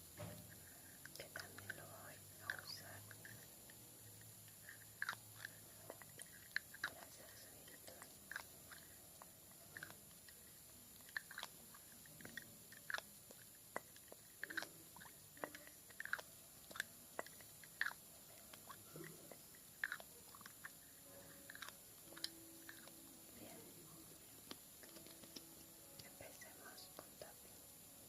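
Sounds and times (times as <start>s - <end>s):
soft tapping clicks and pops: 24.4s - 26.3s.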